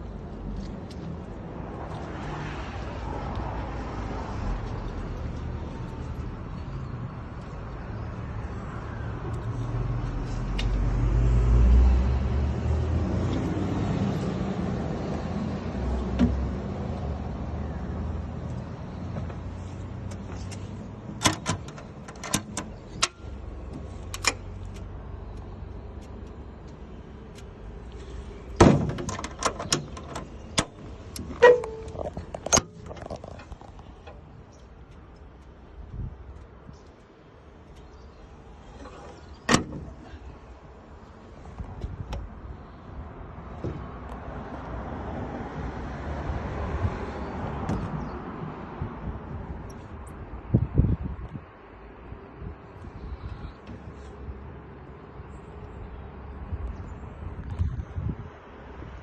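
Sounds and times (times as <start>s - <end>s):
sharp clicks and metallic knocks: 20.1s - 24.9s, 28.6s - 34.3s.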